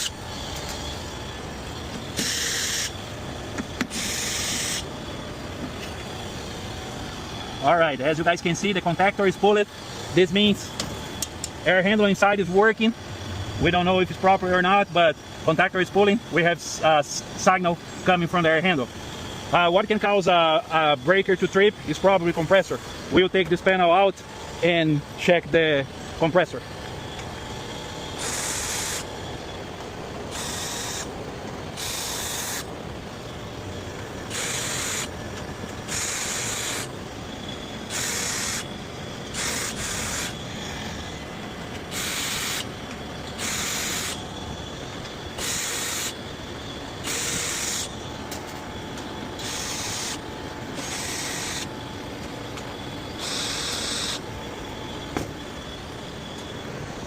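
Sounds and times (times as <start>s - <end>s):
short hissing bursts: 2.2s - 3.0s, 3.9s - 5.0s, 28.2s - 29.1s, 30.3s - 31.1s, 31.8s - 32.7s, 34.3s - 35.1s, 35.8s - 36.9s, 37.8s - 38.7s, 39.3s - 41.0s, 41.9s - 42.7s, 43.4s - 44.2s, 45.4s - 46.2s, 47.0s - 48.0s, 49.4s - 51.8s, 53.2s - 54.3s.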